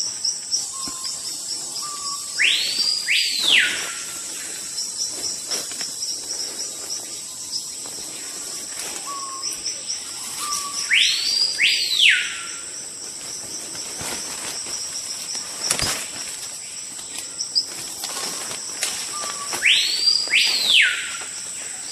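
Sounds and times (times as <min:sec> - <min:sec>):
high insect drone: 0:00.0 - 0:21.9
insects chirping: 0:00.0 - 0:21.9
bird whistling call: 0:01.8 - 0:04.1, 0:10.3 - 0:12.6, 0:19.1 - 0:21.2.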